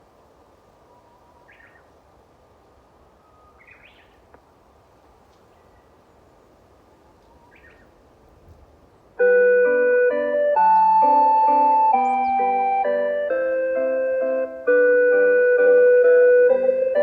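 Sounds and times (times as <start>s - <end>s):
birds singing faintly: 0.0s - 9.2s, 10.2s - 17.0s
low background noise: 0.0s - 17.0s
faint click: 5.3s - 5.5s.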